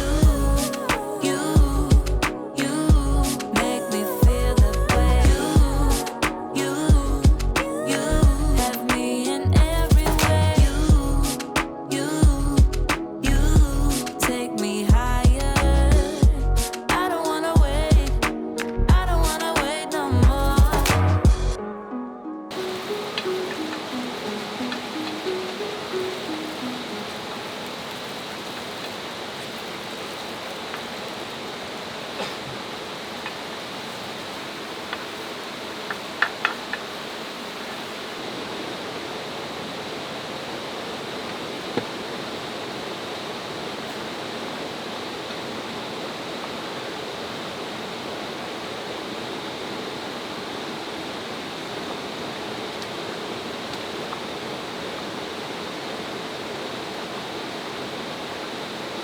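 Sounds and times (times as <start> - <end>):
stream rushing over rocks: 22.5 - 59.0.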